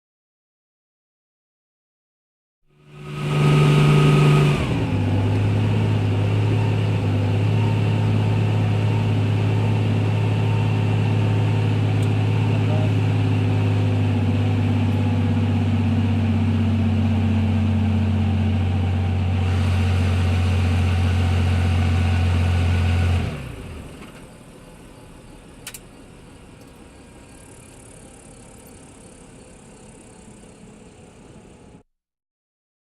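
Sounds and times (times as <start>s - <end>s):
helicopter cabin drone: 2.7s - 31.8s
sharp click: 25.6s - 25.9s.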